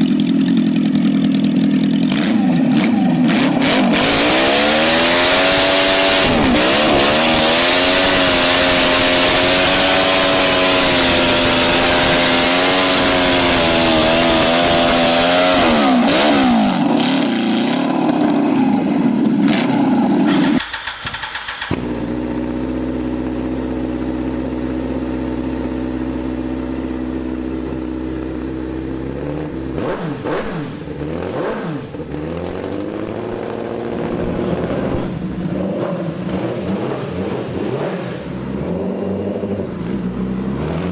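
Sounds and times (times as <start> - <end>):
small engines revving high: 0.0 - 20.8, 29.2 - 40.9
engine with lower steady note: 0.0 - 40.9.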